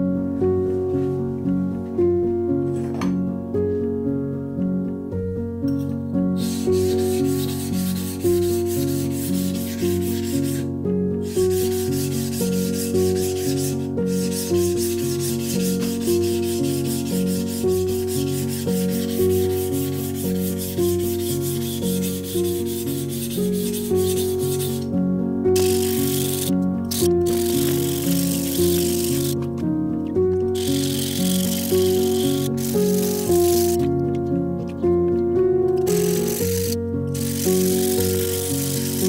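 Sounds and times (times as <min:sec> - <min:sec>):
background music: 0:00.0 - 0:39.0
scratchy abrasive rubbing on knife: 0:06.4 - 0:24.9, 0:25.6 - 0:29.4, 0:30.6 - 0:33.8, 0:35.9 - 0:39.0.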